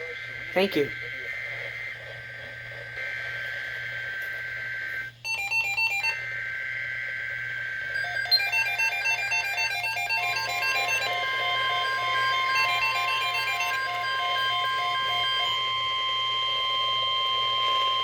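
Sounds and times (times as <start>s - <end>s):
rapid stepped beeps: 7.8s - 15.6s
melody-like electronic tones: 7.9s - 18.0s
two-tone alert signal: 8.0s - 16.0s.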